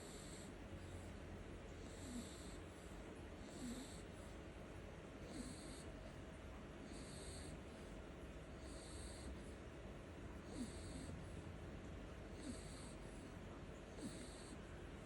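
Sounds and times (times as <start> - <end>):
pet snoring: 0.0 - 1.2, 1.8 - 4.4, 5.2 - 6.0, 6.8 - 8.0, 8.6 - 9.6, 10.4 - 11.4, 12.3 - 14.7.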